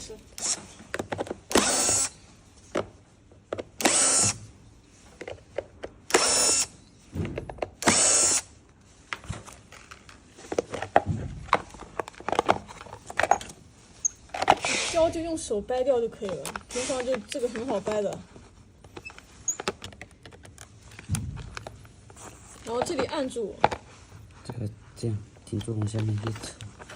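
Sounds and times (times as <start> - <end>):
power drill running: 0.4 - 0.7, 1.5 - 2.2, 3.8 - 4.4, 6.1 - 6.8, 7.8 - 8.5.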